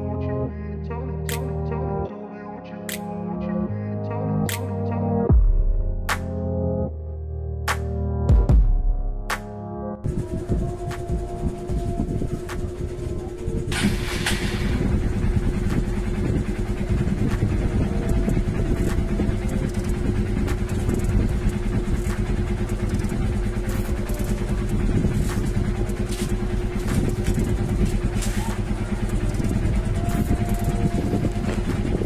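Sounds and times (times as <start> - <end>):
motorcycle engine idling: 10.1 - 32.0.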